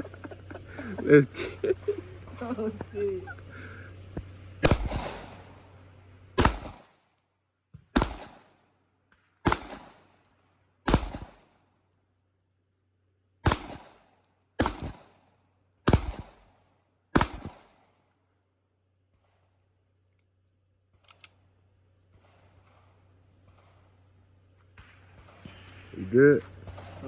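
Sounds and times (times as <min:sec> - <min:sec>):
handgun shots: 0:04.6 - 0:05.4, 0:06.4 - 0:06.9, 0:07.9 - 0:08.5, 0:09.4 - 0:10.0, 0:10.9 - 0:11.4, 0:13.4 - 0:14.0, 0:14.6 - 0:15.1, 0:15.9 - 0:16.4, 0:17.2 - 0:17.7.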